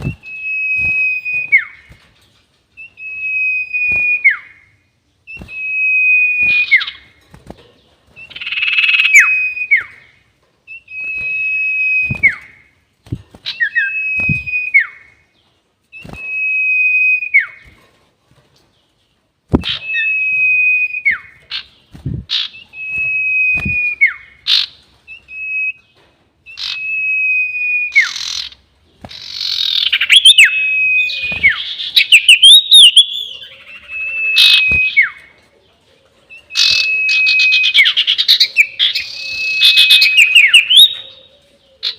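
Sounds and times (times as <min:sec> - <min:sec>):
bird whistling: 0:00.0 - 0:01.9, 0:02.8 - 0:04.7, 0:05.3 - 0:07.0, 0:08.2 - 0:10.1, 0:10.7 - 0:12.7, 0:13.4 - 0:15.2, 0:19.6 - 0:21.6, 0:22.3 - 0:25.9, 0:26.5 - 0:35.3, 0:36.3 - 0:41.9
bird chirps: 0:00.0 - 0:07.2, 0:07.8 - 0:12.8, 0:18.7 - 0:35.4, 0:36.3 - 0:41.9.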